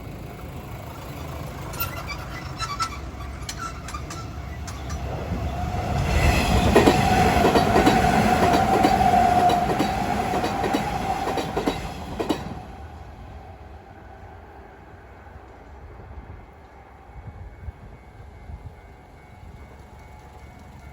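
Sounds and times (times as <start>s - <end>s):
train high whine: 0.0s - 20.9s
wheels clattering over rail joints: 0.4s - 12.8s.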